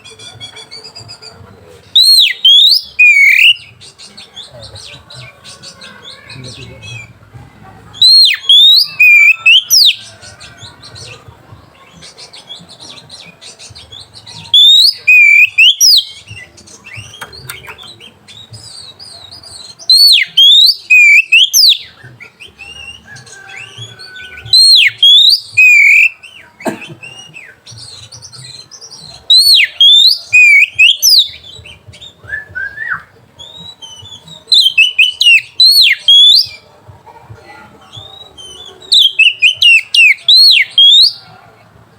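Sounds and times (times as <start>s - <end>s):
bird singing whistled phrases: 2.0s - 4.6s, 8.0s - 10.6s, 11.8s - 36.6s, 37.9s - 41.3s.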